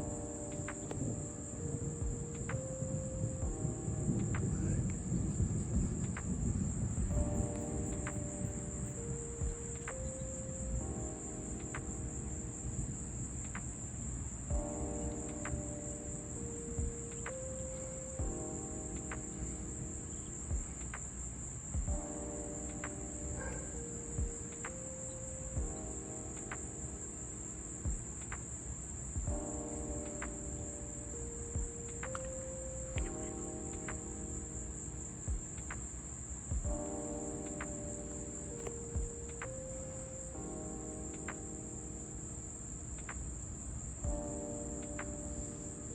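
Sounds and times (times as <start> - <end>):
crickets chirring: 0.0 - 45.9
held low tones: 0.8 - 11.0
faint clicks: 31.8 - 34.2.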